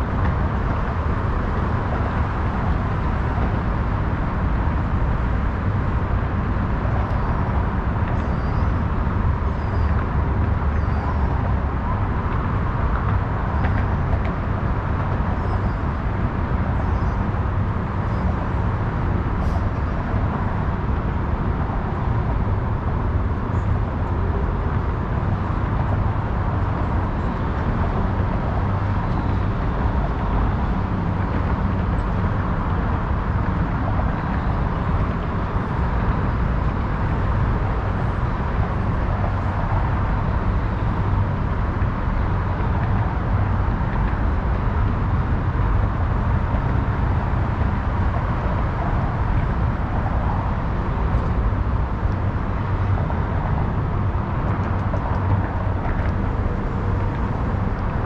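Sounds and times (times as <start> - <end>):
passing cars with low rumble: 0.0 - 58.0.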